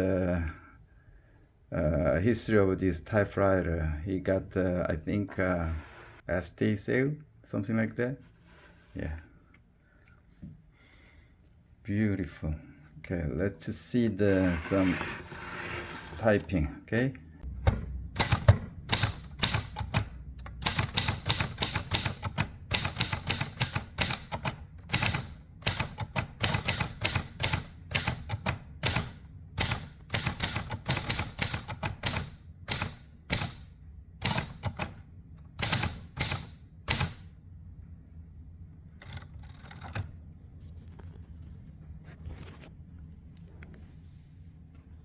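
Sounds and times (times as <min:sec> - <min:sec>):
soft mechanical sounds: 0:04.2 - 0:45.0
typewriter typing: 0:17.4 - 0:37.3, 0:39.0 - 0:40.1.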